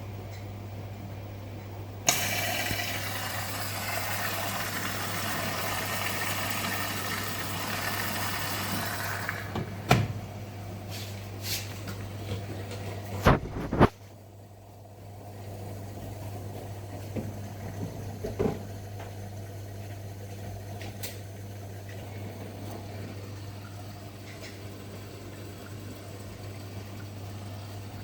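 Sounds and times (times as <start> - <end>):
washing machine humming: 0.0 - 28.0
water rushing into drum: 2.1 - 10.1.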